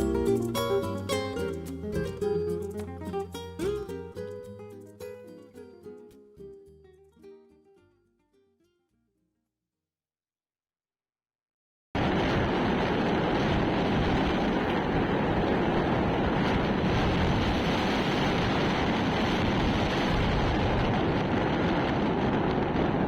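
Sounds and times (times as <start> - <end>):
wind noise on microphone: 0.0 - 4.4, 12.0 - 23.0.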